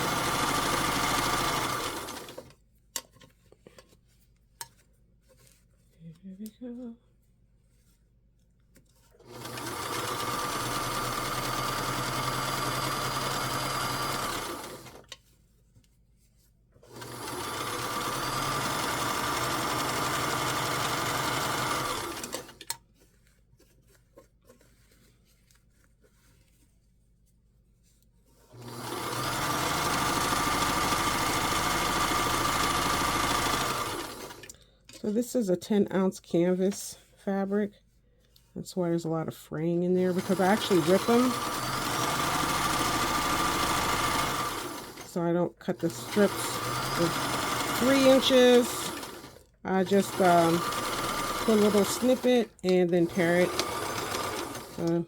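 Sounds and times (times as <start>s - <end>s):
sewing machine running: 0.0s - 2.5s, 9.2s - 15.1s, 16.8s - 22.7s, 28.5s - 34.5s, 40.0s - 45.2s, 45.8s - 55.0s.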